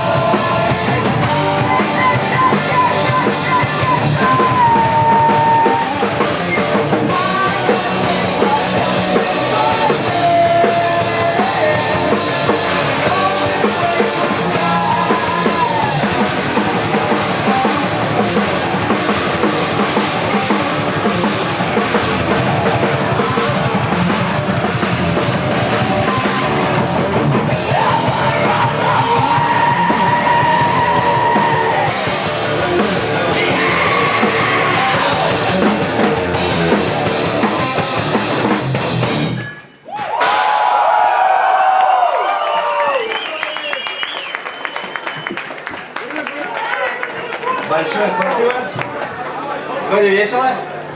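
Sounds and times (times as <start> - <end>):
drum kit steady beat: 0.0 - 39.4
band playing loud live music: 0.0 - 41.2.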